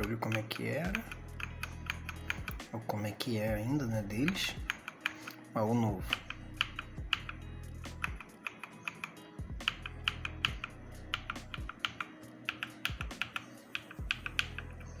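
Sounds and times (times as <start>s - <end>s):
background music: 0.0s - 15.0s
mechanical keyboard typing: 8.0s - 14.8s.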